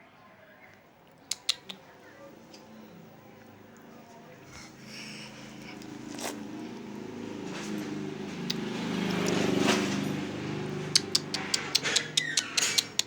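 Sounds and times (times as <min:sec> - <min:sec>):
cats growling and yowling: 0:04.6 - 0:13.0.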